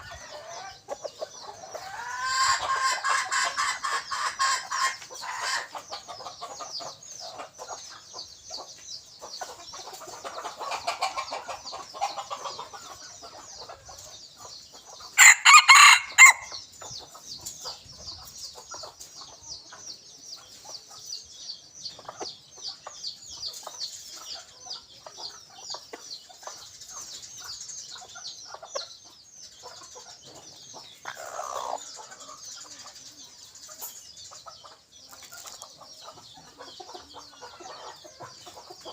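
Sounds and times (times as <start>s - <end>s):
rooster crowing: 15.2s - 16.5s.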